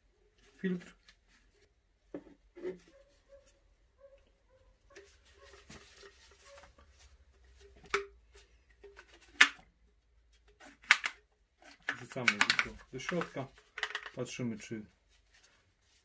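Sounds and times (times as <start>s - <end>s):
clicks and rustles of handled parts: 4.9s - 14.4s.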